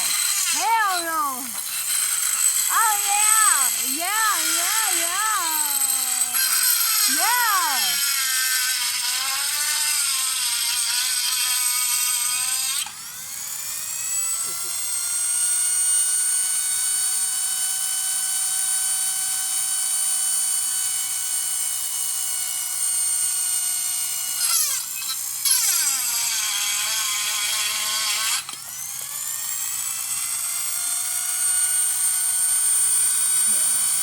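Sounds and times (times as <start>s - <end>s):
air compressor motor whining: 0.0s - 9.9s, 28.4s - 34.0s.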